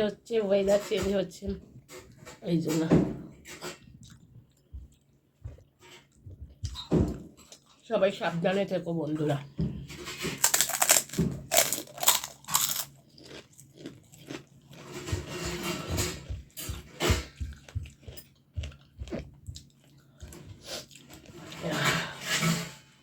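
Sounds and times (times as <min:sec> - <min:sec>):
crunching and chewing of fried snack: 0:10.3 - 0:21.5.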